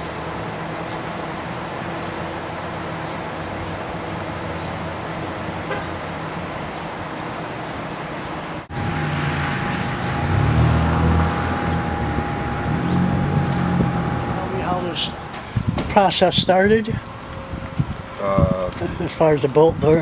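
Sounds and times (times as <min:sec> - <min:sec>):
road traffic noise: 0:00.0 - 0:20.0
low rumble with high whine: 0:08.7 - 0:19.1.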